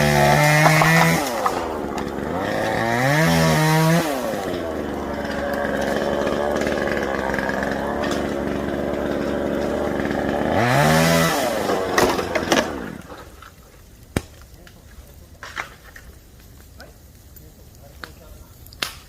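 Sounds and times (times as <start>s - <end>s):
small engine running: 0.0s - 12.8s
sharp crack: 0.0s - 19.0s.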